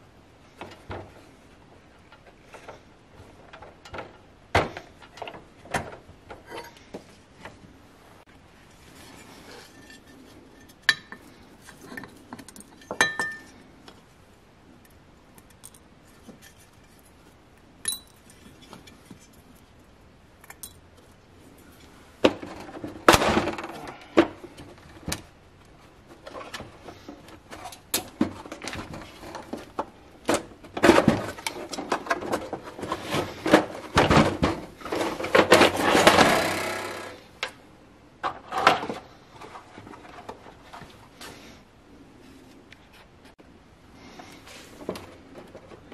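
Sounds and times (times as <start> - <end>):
scraping and rubbing on metal: 8.8 - 12.3
metal clinks and taps: 17.8 - 19.0.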